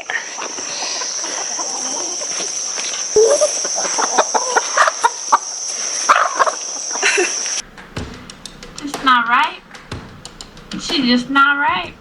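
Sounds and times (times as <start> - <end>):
chickens clucking: 0.0 - 12.0
high-pitched insect buzz: 0.1 - 7.6.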